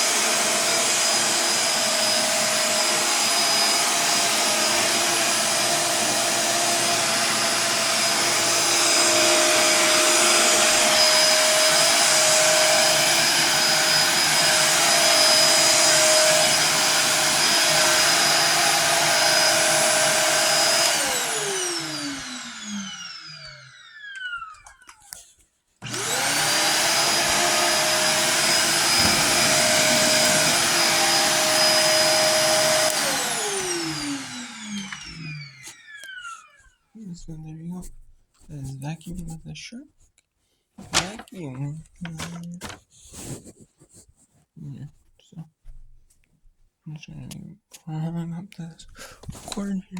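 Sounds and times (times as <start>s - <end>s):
vacuum cleaner motor whine: 0.0s - 25.2s, 25.8s - 36.8s.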